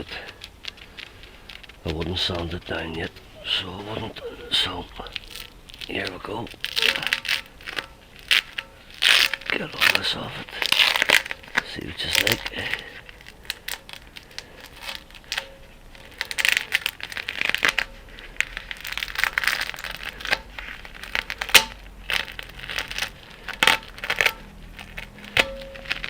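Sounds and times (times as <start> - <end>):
covering peeled and torn: 0.0 - 26.0
crinkling and crumpling: 0.0 - 26.0.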